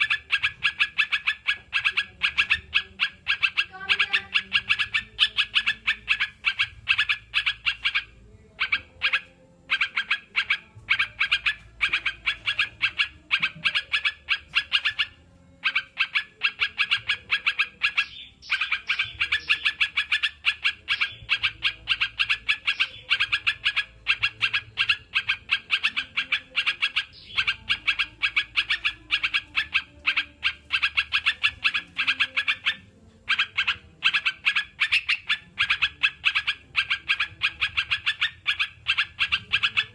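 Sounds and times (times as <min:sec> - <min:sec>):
bird chattering: 0:00.0 - 0:39.9.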